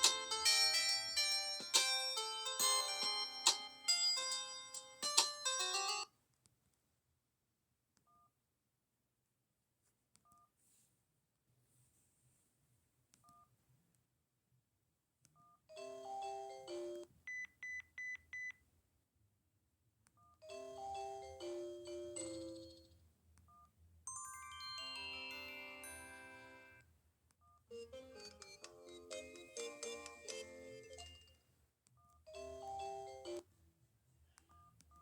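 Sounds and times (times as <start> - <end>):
polyphonic ringtone: 0.0 - 6.1, 20.4 - 22.9, 24.1 - 26.8, 27.7 - 31.3, 32.3 - 33.4
two-tone keypad beeps: 17.3 - 18.6.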